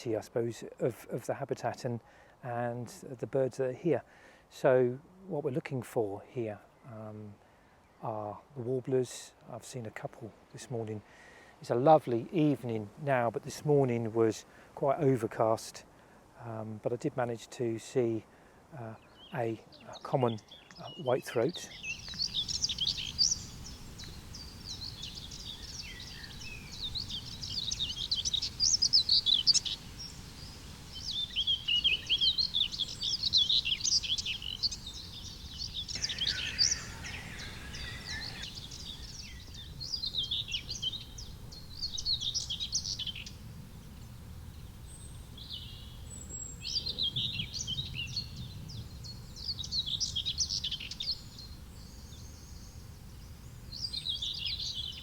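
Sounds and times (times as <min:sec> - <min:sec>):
bird warbling song: 0:18.8 - 0:55.0.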